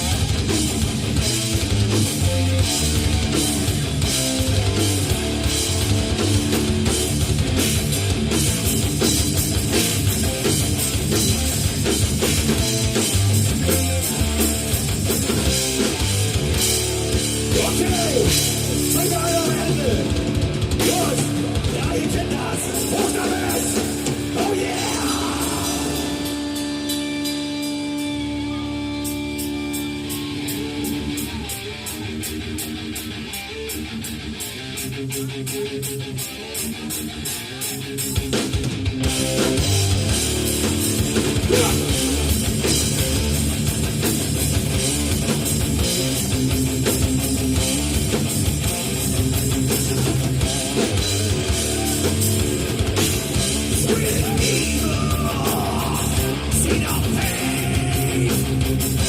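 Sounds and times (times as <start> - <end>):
bass guitar: 0.0 - 59.0
distorted guitars: 0.0 - 59.0
drum kit: 0.0 - 59.0.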